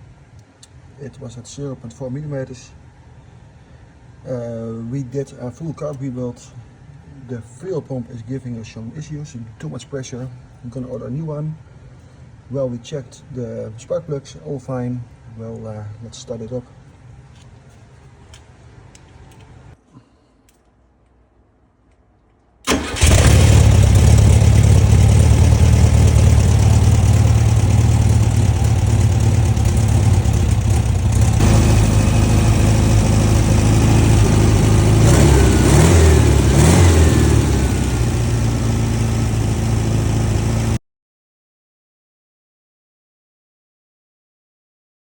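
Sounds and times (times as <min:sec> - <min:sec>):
car engine starting and running: 0:22.7 - 0:40.8.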